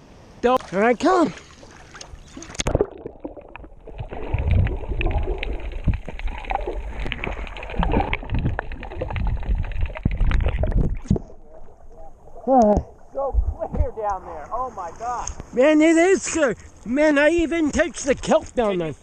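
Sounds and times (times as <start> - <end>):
muffled underwater rushing water: 1.2 - 15.0
underwater clicks and knocks: 2.4 - 11.4.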